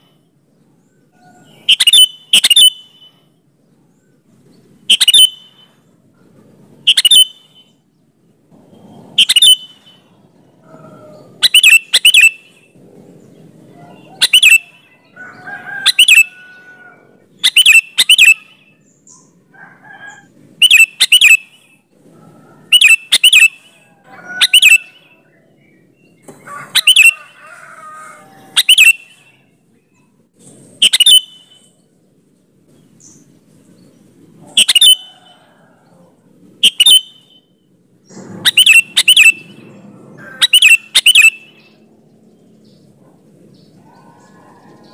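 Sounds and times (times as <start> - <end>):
bird calling sharp notes: 1.4 - 3.2, 4.8 - 5.8, 6.8 - 7.8, 9.1 - 12.8, 13.8 - 18.7, 20.6 - 21.8, 22.6 - 25.2, 26.2 - 29.5, 30.8 - 31.8, 34.4 - 35.3, 36.6 - 41.8.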